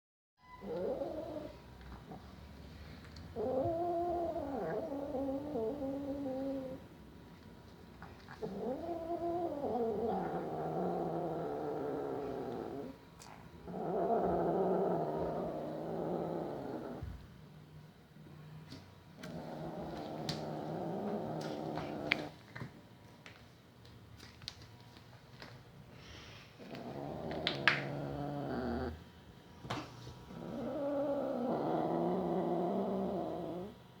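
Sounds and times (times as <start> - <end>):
cat growling: 0.6 - 2.4, 3.2 - 6.9, 8.2 - 17.2, 19.2 - 22.4, 26.6 - 29.0, 30.3 - 33.9
cat growling yowls: 3.4 - 6.8, 8.4 - 12.9, 30.3 - 33.7.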